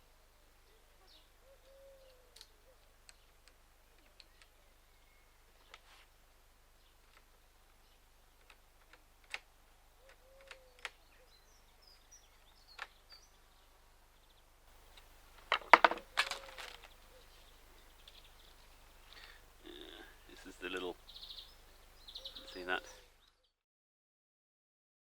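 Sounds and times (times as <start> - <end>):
faint bird chirps: 0.6 - 5.8, 10.0 - 15.1, 16.0 - 23.6.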